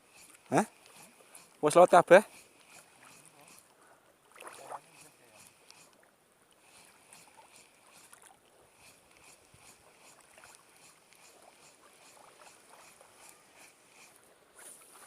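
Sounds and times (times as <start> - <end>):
soft high-pitched ticks: 4.8 - 8.2, 8.8 - 14.2.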